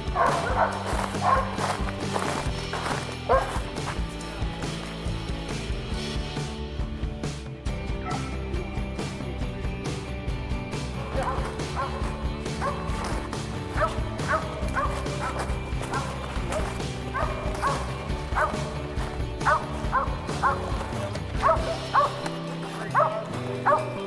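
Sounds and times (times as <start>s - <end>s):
dog barking: 0.0s - 3.7s, 8.0s - 8.4s, 11.1s - 18.8s, 19.4s - 24.0s
background music: 0.0s - 24.0s.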